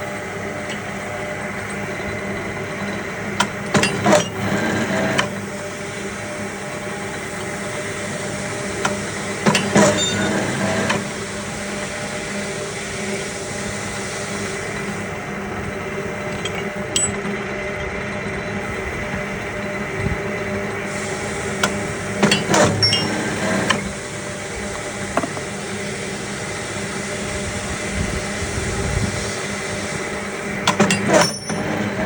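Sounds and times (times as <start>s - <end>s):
machine motor hum: 0.0s - 32.0s
metallic clanking of blade shearing: 8.8s - 11.1s, 21.6s - 23.9s, 30.6s - 32.0s.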